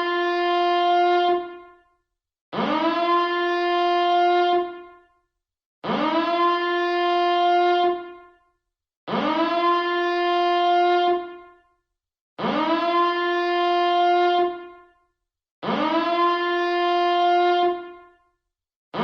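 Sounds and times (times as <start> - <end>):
alarm siren blasts: 0.0 - 1.8, 2.5 - 5.2, 5.8 - 8.5, 9.1 - 11.7, 12.4 - 15.0, 15.6 - 18.3.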